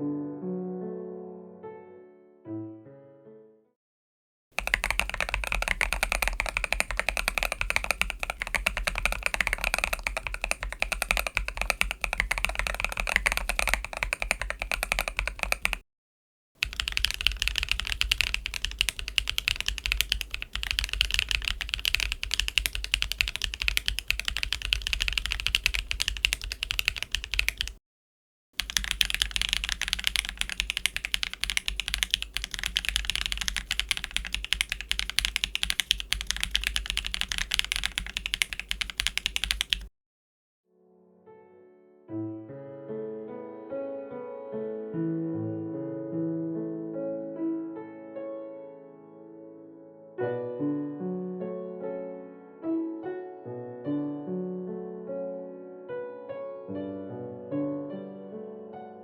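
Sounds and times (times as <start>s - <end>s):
mechanical keyboard typing: 4.6s - 15.8s, 16.6s - 27.8s, 28.6s - 39.9s.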